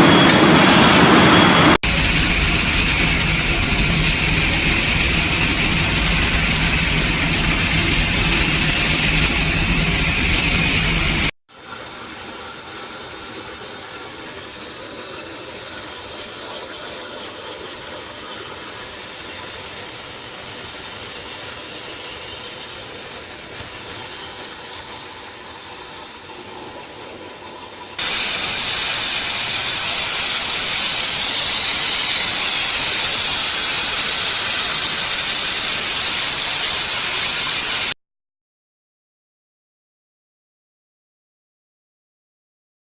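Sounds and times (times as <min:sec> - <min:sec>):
plasma torch hissing: 0:28.0 - 0:38.0.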